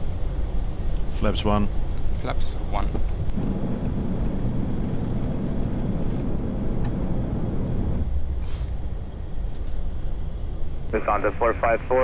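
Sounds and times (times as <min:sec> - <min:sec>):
airflow and engine rumble: 0:00.0 - 0:12.0
short hiss: 0:08.4 - 0:08.8.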